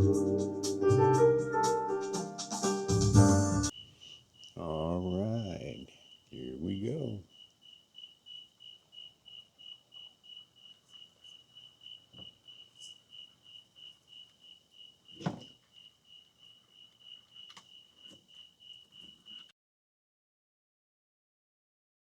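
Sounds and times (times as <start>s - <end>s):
cricket chirping: 3.7s - 19.5s
sharp knock: 15.2s - 15.5s.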